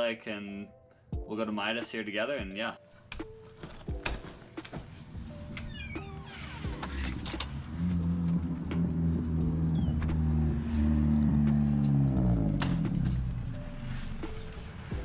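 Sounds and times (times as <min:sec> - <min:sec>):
car engine running: 0:07.4 - 0:13.6.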